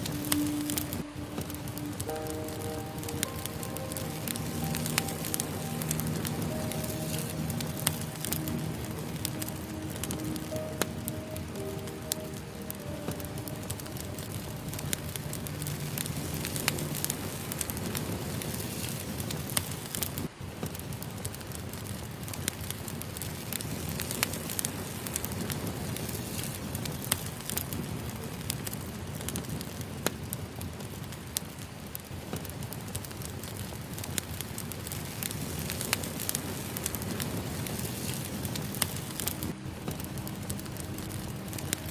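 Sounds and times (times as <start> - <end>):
soft sustained music notes: 0.0 - 20.3, 34.9 - 41.9
fire hissing: 0.0 - 41.9
logs crackling and popping: 0.0 - 41.9.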